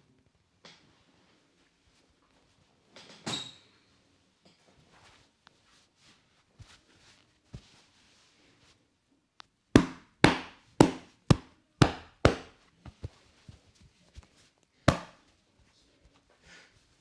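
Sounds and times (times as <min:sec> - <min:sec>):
hands slapping a back: 0:09.8 - 0:12.5, 0:14.9 - 0:15.1.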